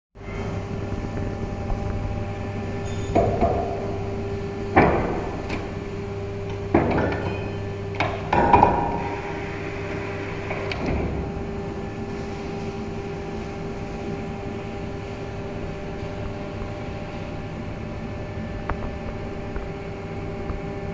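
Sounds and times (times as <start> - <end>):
machine humming: 0.2 - 20.9
machine clunks and knocks: 2.8 - 4.1, 4.7 - 5.8, 6.4 - 9.4, 10.4 - 11.5.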